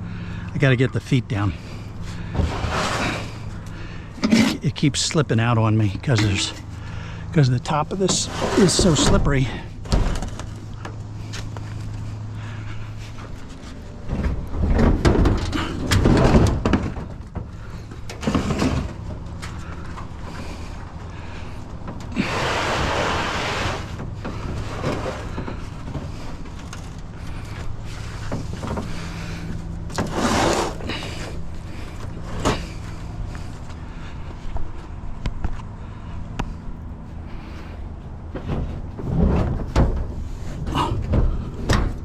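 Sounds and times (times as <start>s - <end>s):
steady low hum: 0.0s - 42.0s
appliance scraping across surface: 2.1s - 3.5s, 8.1s - 9.3s, 22.2s - 26.2s, 29.9s - 31.4s
heavy appliance banging: 7.9s - 10.6s, 14.0s - 32.9s, 38.3s - 42.0s.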